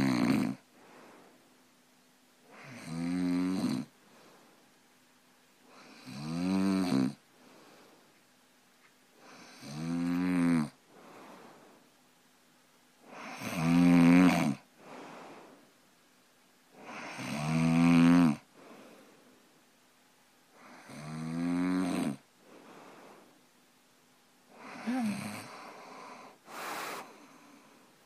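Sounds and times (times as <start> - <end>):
man snoring: 0.0 - 0.6, 2.5 - 3.9, 5.7 - 7.2, 9.2 - 10.8, 13.0 - 14.7, 16.8 - 18.5, 20.6 - 22.3, 24.5 - 27.8.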